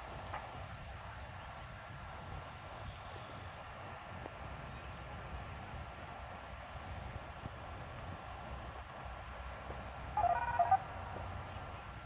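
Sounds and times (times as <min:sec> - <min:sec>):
faint steady high tone: 0:10.2 - 0:10.9.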